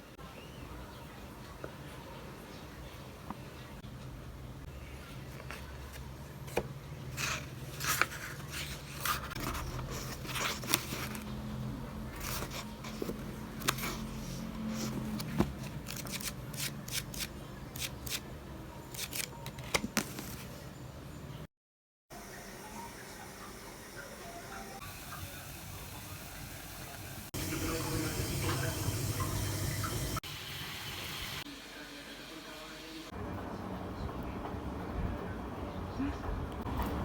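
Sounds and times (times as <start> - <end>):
objects being handled: 5.0 - 18.2, 18.9 - 20.7.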